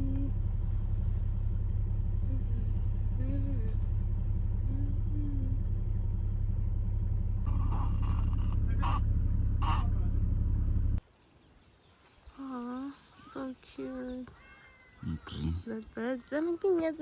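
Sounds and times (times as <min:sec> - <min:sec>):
car road noise rumble: 0:00.0 - 0:11.0
faint voice: 0:07.5 - 0:09.0, 0:09.6 - 0:10.0.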